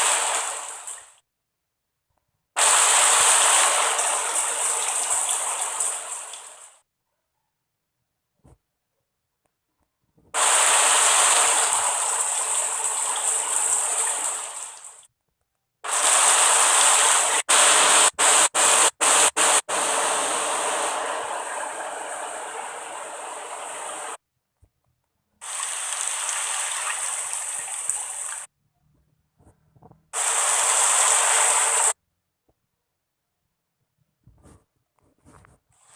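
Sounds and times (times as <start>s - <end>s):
rushing water: 0.0s - 1.2s, 2.6s - 6.8s, 10.4s - 15.0s, 15.9s - 24.2s, 25.4s - 28.5s, 30.2s - 32.0s.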